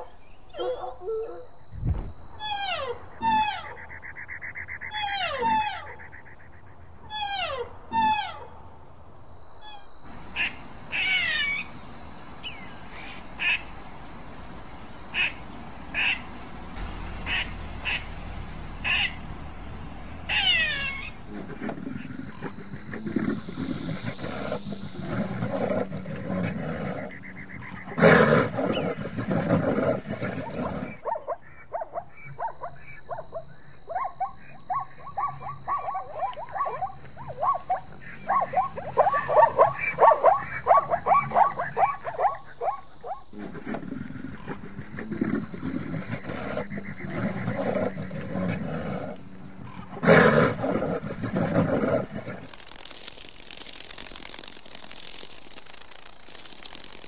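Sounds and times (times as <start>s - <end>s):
rapid short calls: 2.4s - 25.6s, 52.4s - 57.0s
big cat growling: 16.2s - 31.0s, 43.3s - 52.4s
big cat roaring: 16.8s - 27.2s, 43.4s - 52.4s.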